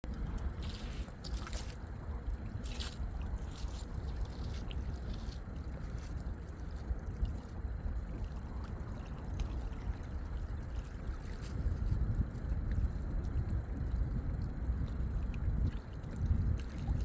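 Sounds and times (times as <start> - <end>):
light water splashes: 0.0 - 17.0
low wind rumble: 0.0 - 17.0
small waves lapping: 0.1 - 13.1.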